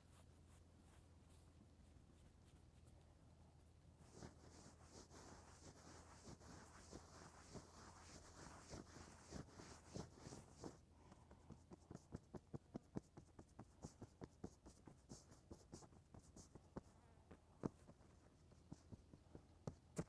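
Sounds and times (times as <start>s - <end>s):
hair rustling: 4.1s - 10.8s
fingers clicking on scalp: 6.2s - 16.8s.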